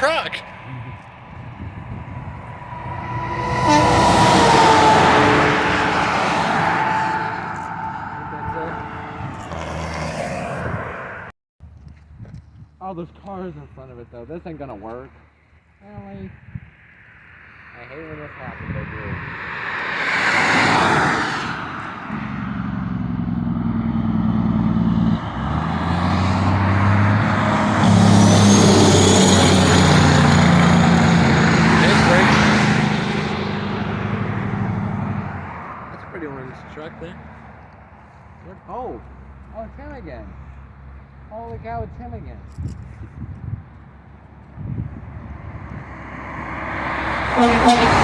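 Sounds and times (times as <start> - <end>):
diesel truck engine drone: 0.0 - 11.3, 17.0 - 41.3, 43.8 - 48.0
passing traffic rush: 0.0 - 11.3, 14.5 - 48.0
wind buffeting microphone: 0.4 - 9.8, 16.0 - 16.9, 18.4 - 19.5, 41.6 - 48.0.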